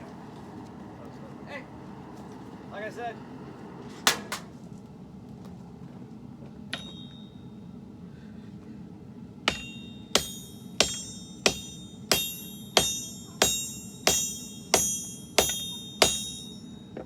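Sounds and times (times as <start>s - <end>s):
hammer striking steel on anvil: 4.1s - 4.5s, 6.7s - 7.6s, 9.4s - 17.0s.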